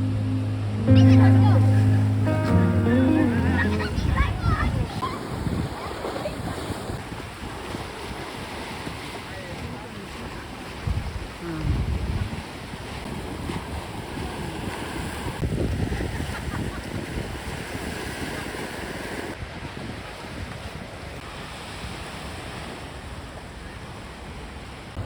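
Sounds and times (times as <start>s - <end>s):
surf washing on shore: 0.0s - 25.0s
wind buffeting microphone: 3.8s - 9.1s, 10.6s - 20.8s.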